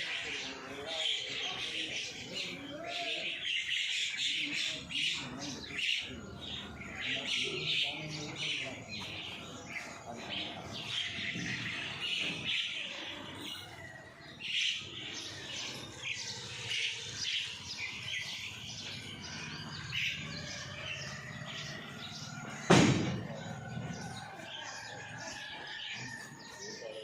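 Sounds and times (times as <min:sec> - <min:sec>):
small birds chirping: 0:00.0 - 0:27.0
loud thud: 0:22.6 - 0:23.5.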